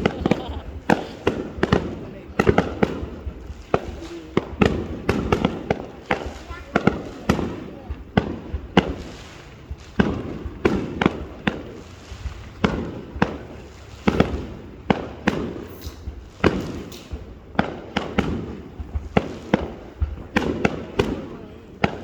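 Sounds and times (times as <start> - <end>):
fireworks bangs with rumbling echo: 0.0 - 22.0.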